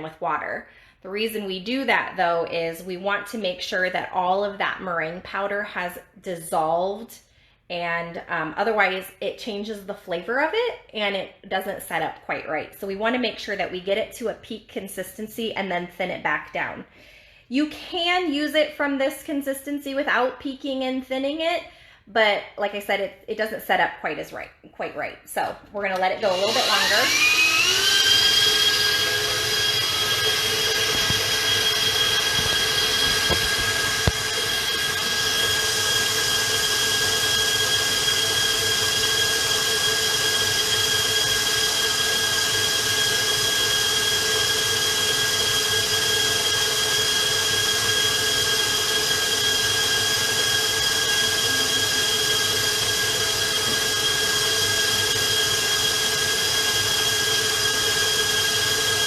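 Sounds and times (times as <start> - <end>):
stand mixer motor whine: 25.9 - 59.0.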